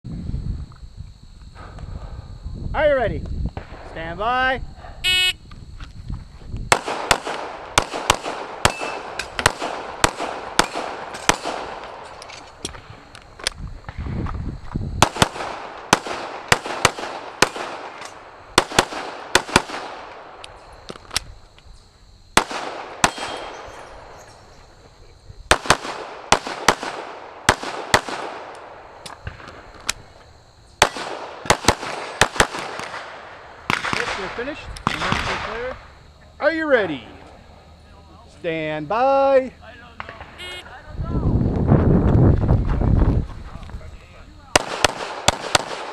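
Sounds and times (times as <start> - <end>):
pistol firing rapid shots: 6.7 - 12.0, 15.0 - 18.0, 18.6 - 20.1, 22.4 - 23.6, 25.5 - 28.5, 30.8 - 34.2, 44.5 - 45.9.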